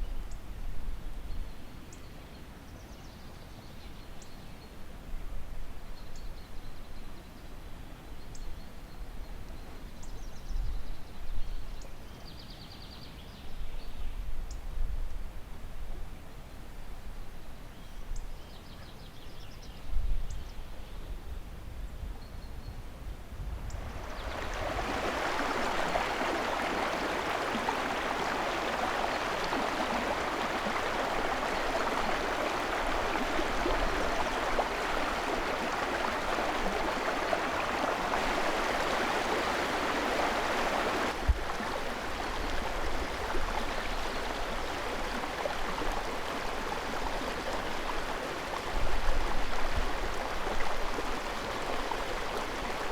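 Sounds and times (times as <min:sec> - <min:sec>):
stream flowing: 0:23.6 - 0:52.9.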